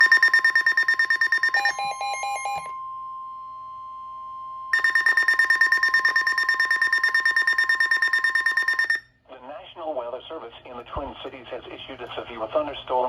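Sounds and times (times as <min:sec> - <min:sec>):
pulsing electronic alarm buzz: 0:00.0 - 0:04.1, 0:04.7 - 0:09.0.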